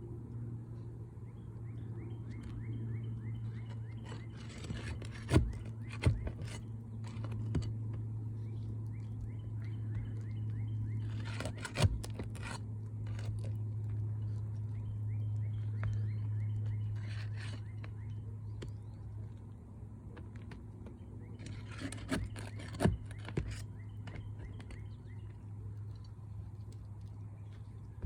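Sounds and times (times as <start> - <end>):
steady low hum: 0.0 - 28.0
hand tools scraping roof shingle: 3.8 - 7.8, 11.0 - 13.6, 16.7 - 18.0, 21.4 - 24.8.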